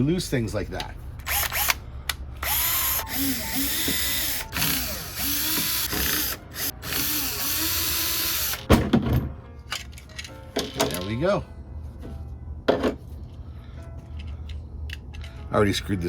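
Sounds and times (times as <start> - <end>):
cordless drill motor whirring: 1.2 - 1.8, 2.4 - 8.7.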